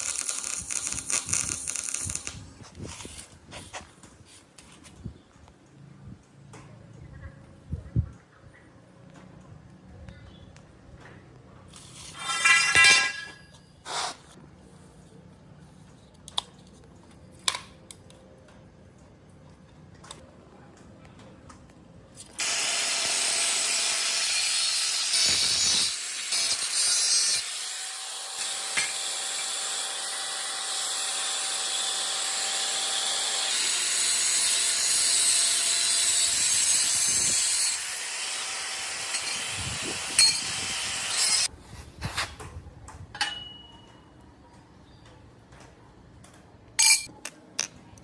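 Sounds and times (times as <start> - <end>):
power tool grinding metal: 22.4 - 41.5.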